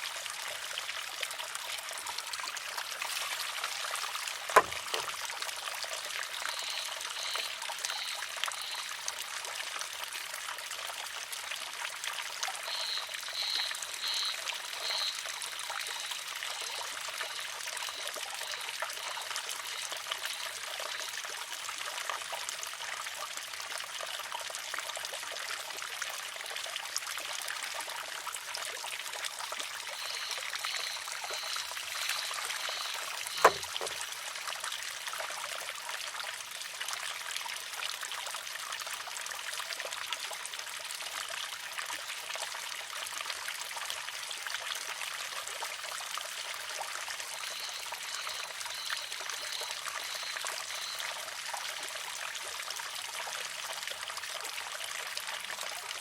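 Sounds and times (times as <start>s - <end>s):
water trickling: 0.0s - 56.0s
bamboo arm clacking on rock: 4.4s - 5.2s, 31.3s - 34.0s.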